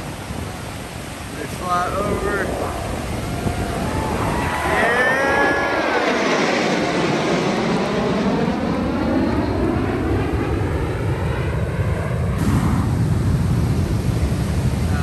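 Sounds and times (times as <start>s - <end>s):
wind buffeting microphone: 0.0s - 7.7s, 12.2s - 15.0s
jet engine roar: 0.0s - 15.0s.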